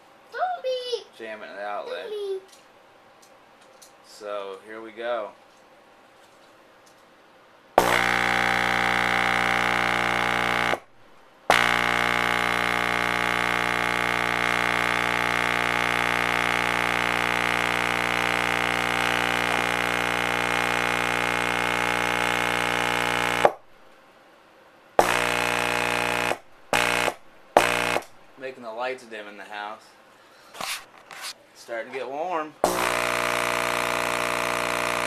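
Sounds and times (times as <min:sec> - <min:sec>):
subwoofer mains hum: 0:00.0 - 0:35.0.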